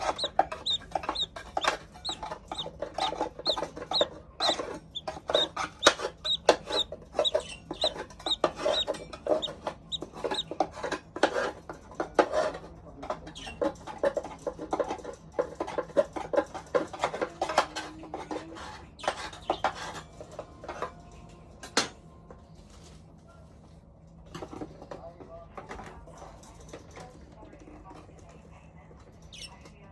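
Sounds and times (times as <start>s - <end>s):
budgerigar chirping: 0.0s - 10.5s.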